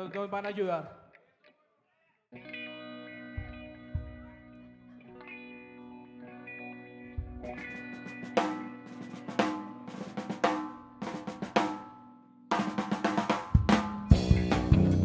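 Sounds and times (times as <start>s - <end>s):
kick drum: 3.4s - 4.3s, 7.2s - 7.6s
drum and cymbal hits: 7.2s - 11.9s, 12.5s - 15.0s
drum fill: 7.2s - 11.9s, 12.5s - 15.0s
bass guitar: 14.0s - 15.0s
distorted electric guitar chord: 14.1s - 15.0s.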